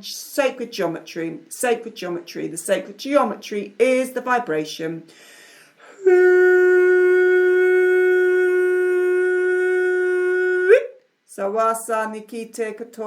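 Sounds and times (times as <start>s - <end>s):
intake of breath: 5.1s - 6.0s.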